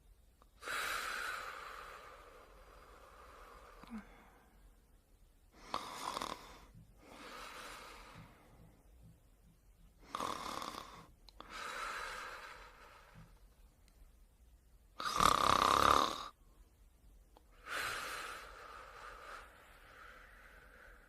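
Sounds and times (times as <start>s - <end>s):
person snoring: 0.6s - 4.4s, 5.6s - 8.4s, 10.0s - 13.3s, 15.0s - 16.4s, 17.6s - 21.0s.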